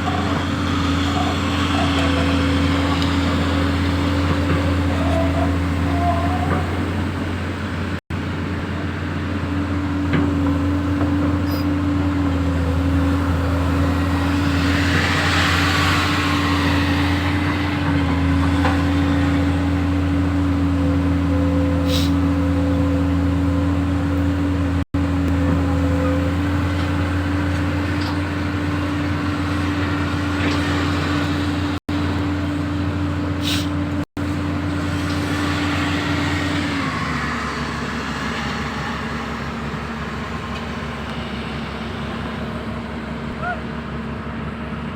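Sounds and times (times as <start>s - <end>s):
brief hiss: 33.4s - 33.7s.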